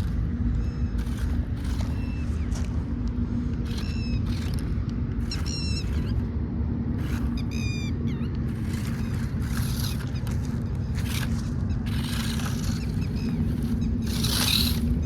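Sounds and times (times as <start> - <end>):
toy car motor humming: 0.0 - 15.0
bird calling: 7.0 - 15.0.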